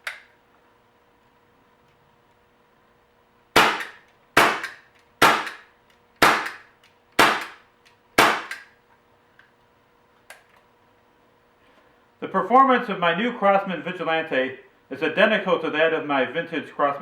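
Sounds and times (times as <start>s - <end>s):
pellet pistol shots: 3.6s - 7.6s, 8.2s - 8.7s.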